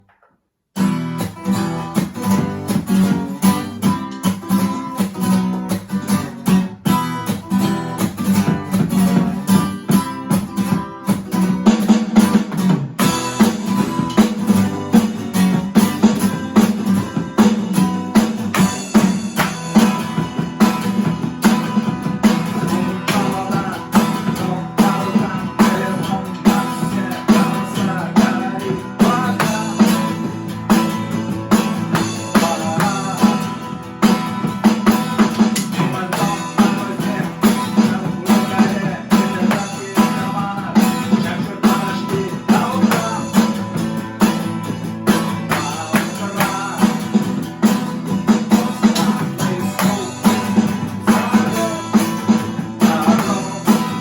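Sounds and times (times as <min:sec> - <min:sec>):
guitar strumming: 0:00.0 - 0:54.0.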